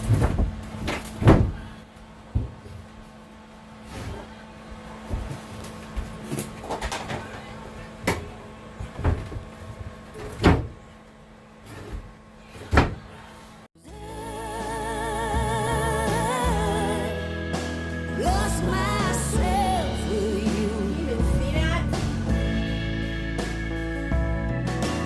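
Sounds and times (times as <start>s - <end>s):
low steady hum: 0.0s - 24.9s
music with singing voice: 13.8s - 25.0s.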